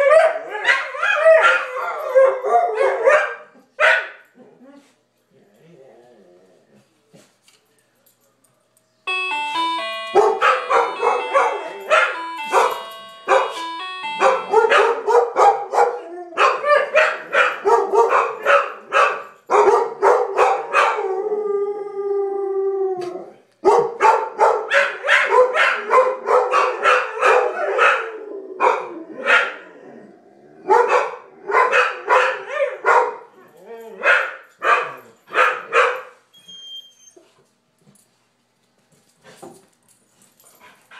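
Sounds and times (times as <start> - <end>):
dog barking: 0.0 - 4.2, 10.2 - 13.6, 14.2 - 21.1, 23.6 - 29.6, 30.6 - 33.3, 34.0 - 36.2
multi-note doorbell chime: 9.1 - 15.2.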